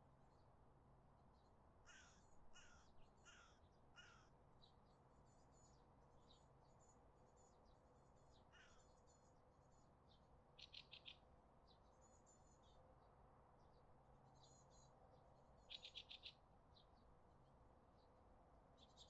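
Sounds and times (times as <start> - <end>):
crow cawing faintly: 1.8 - 4.4, 8.5 - 8.9
small birds chirping: 1.9 - 12.8, 13.6 - 15.0, 15.6 - 17.1, 18.8 - 19.0.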